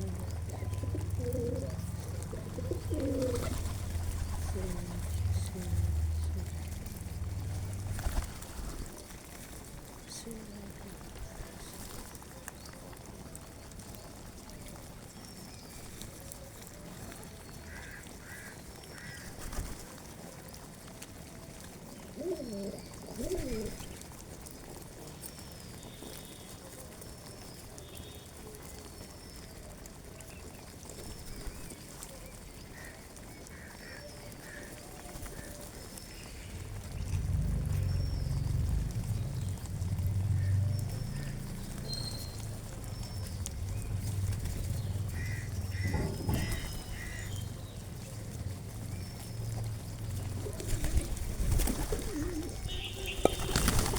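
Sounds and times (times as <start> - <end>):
small birds chirping: 0.0 - 8.4, 21.8 - 53.9.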